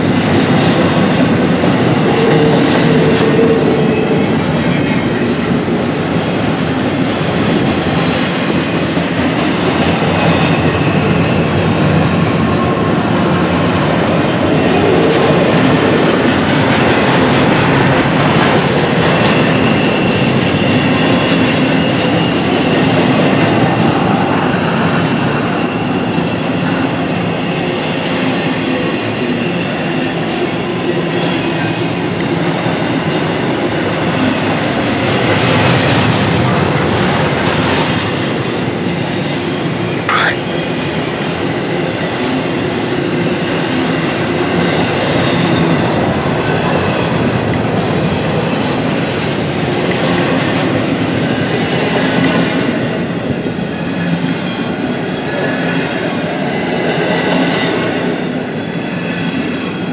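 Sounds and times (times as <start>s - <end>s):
clickety-clack over rail joints: 0.0s - 38.7s
freight train wheels rumbling on rail: 0.0s - 40.0s, 40.6s - 59.9s.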